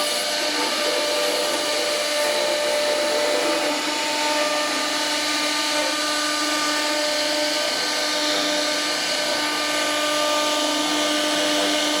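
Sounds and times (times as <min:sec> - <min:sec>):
router spindle cutting wood: 0:00.0 - 0:12.0.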